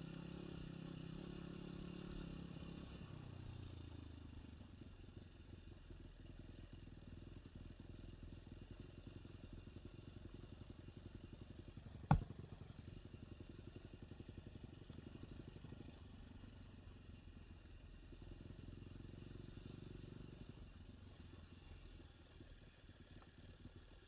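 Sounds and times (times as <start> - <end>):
motorcycle engine idling: 0.0 - 24.0
sharp knock: 12.1 - 12.4.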